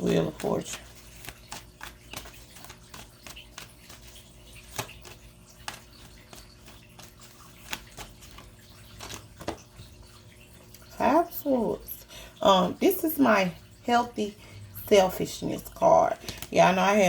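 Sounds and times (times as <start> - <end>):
cards clicking and tapping: 0.0 - 9.8, 16.2 - 16.6
low steady hum: 0.0 - 17.0.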